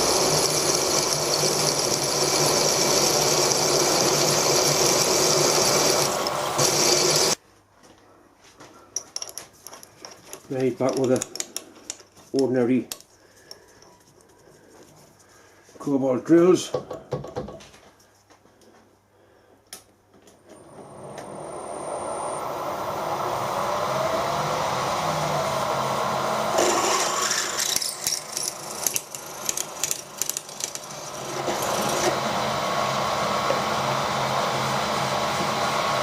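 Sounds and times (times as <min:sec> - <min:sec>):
drill bit rasping into steel: 0:00.0 - 0:07.4
electric drill running: 0:00.0 - 0:07.4, 0:21.0 - 0:36.0.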